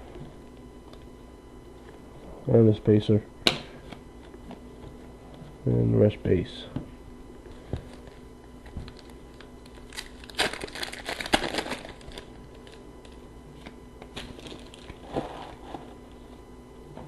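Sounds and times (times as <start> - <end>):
foil wrapper tearing and rustling: 8.8 - 13.2, 14.2 - 15.8.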